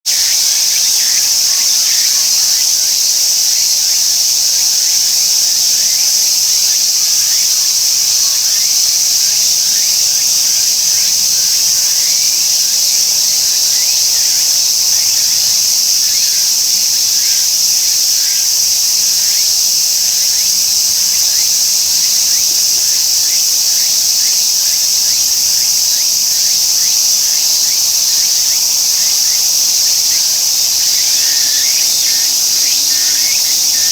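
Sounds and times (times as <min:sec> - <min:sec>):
cicada buzzing: 0:00.1 - 0:33.9.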